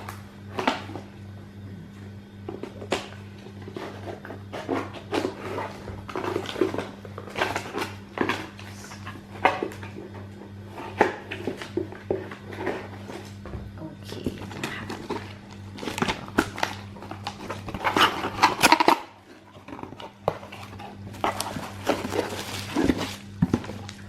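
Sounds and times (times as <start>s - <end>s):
steady low hum: 0.0s - 24.0s
plastic package rustling and crinkling: 14.2s - 24.0s.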